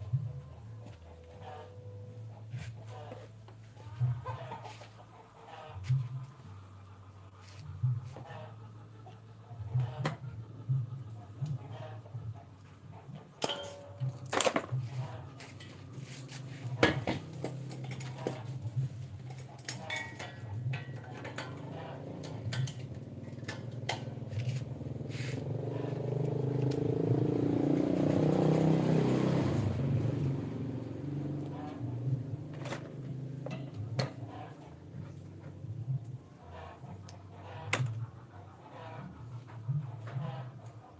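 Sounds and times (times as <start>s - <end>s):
metal tools clicking and tapping: 13.4s - 14.8s, 16.8s - 24.5s.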